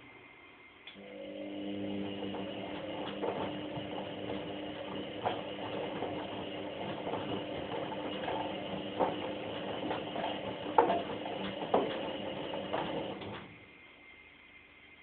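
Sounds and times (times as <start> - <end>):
washing machine motor hum: 0.8 - 15.0
drum knocks and clacks: 2.8 - 12.1.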